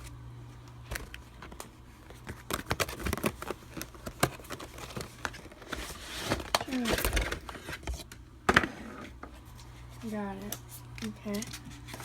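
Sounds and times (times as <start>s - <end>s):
packaging clicks and rustles: 0.8s - 8.1s, 10.1s - 12.0s.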